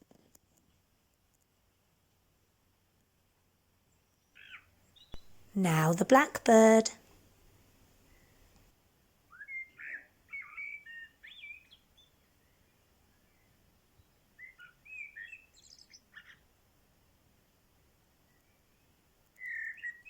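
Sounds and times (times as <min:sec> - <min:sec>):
blackbird singing: 0:09.4 - 0:12.1, 0:14.4 - 0:16.4, 0:19.4 - 0:20.0.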